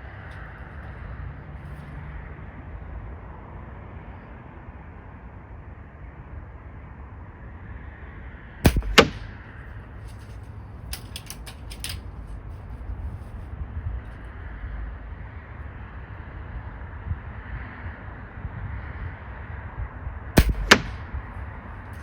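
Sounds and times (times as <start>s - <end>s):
air rifle shot: 8.7s - 9.5s, 20.4s - 21.2s.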